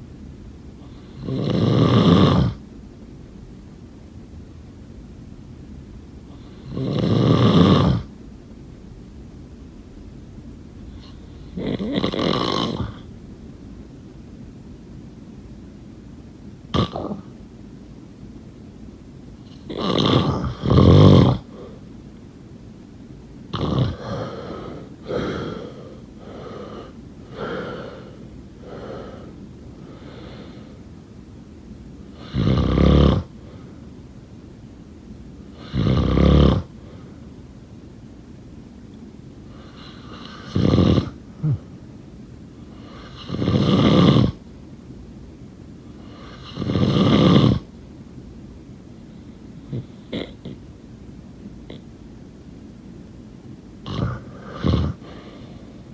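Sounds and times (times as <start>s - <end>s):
snoring: 0.8s - 2.6s, 6.3s - 8.1s, 10.9s - 13.1s, 16.7s - 17.3s, 19.5s - 21.8s, 23.5s - 30.7s, 32.1s - 33.6s, 35.5s - 37.0s, 39.5s - 41.7s, 42.7s - 44.4s, 46.0s - 47.7s, 49.6s - 50.6s, 53.8s - 55.9s.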